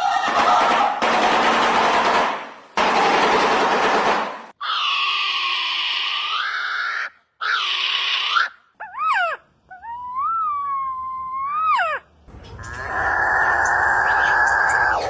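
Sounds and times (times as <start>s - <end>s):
nasal bird calls: 6.4s - 15.0s
harsh bird call: 12.5s - 15.0s.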